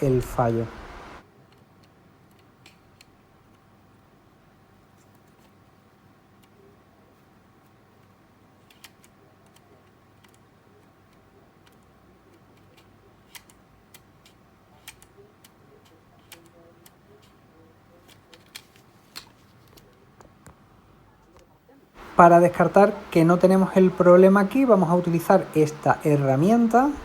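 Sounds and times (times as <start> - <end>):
faint electrical hum: 0.0 - 27.0
small parts clicking and tapping: 1.4 - 3.7, 8.0 - 20.6.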